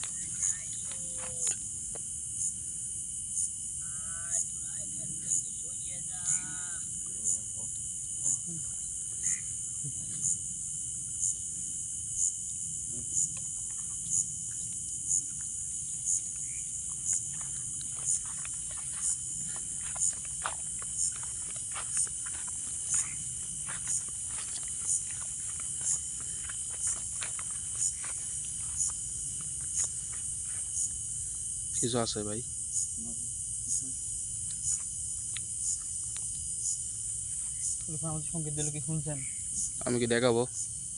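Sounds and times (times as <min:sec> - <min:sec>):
faint ticks and rustles: 0:00.0 - 0:02.1, 0:13.0 - 0:32.2
insects trilling: 0:00.0 - 0:40.9.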